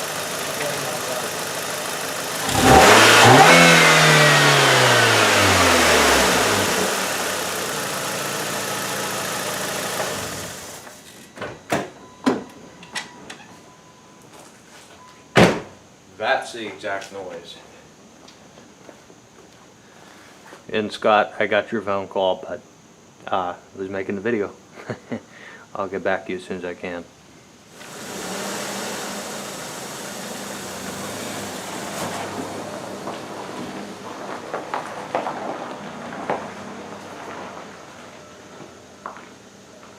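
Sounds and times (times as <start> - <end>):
car engine running down: 0.0 - 11.0, 27.7 - 39.2.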